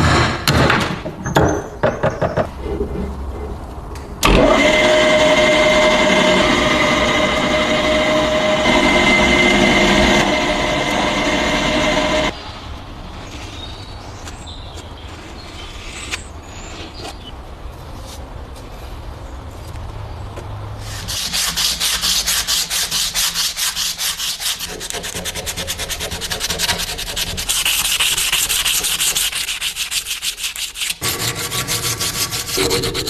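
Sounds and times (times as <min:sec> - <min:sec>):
motor whining: 0:04.2 - 0:12.3.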